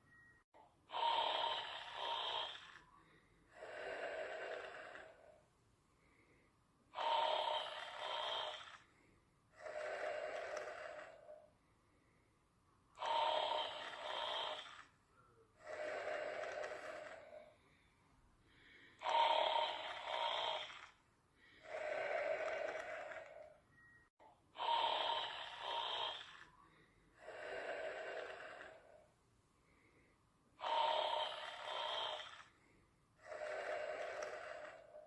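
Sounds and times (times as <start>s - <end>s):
rhythmic snoring: 0.8s - 11.5s, 12.9s - 17.8s, 18.5s - 35.0s.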